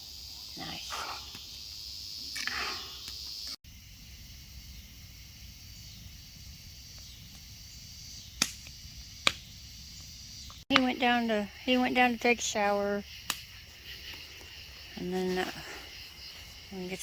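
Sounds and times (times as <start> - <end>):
insects chirping: 0.0 - 17.0
sharp pops: 8.4 - 9.5, 13.2 - 13.5.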